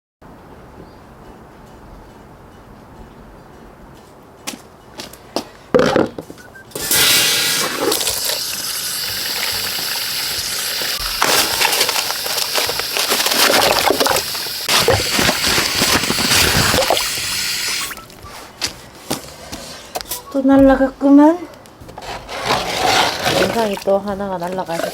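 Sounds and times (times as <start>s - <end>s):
running water: 7.5s - 18.0s, 22.4s - 24.9s.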